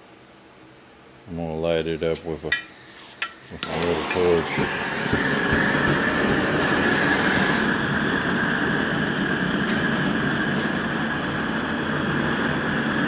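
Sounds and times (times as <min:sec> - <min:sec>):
propane burner flame rushing: 0:02.8 - 0:13.0
high whine: 0:03.5 - 0:13.0.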